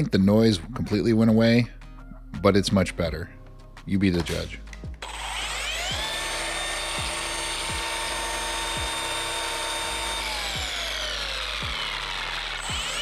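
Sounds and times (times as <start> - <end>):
cordless polisher running: 5.0 - 13.0.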